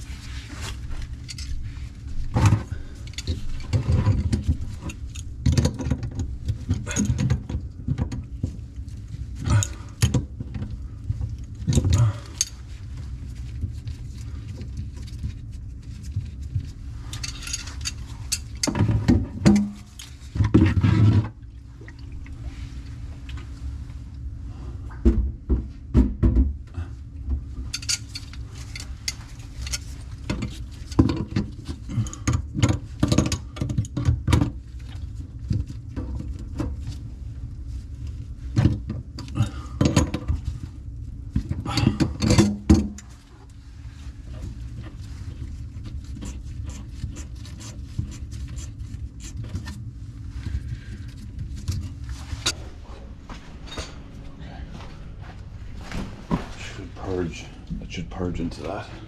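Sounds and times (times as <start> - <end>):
steady low hum: 0.0 - 59.0
metal tools clinking and clattering: 17.1 - 18.8, 27.7 - 30.0, 53.6 - 54.4.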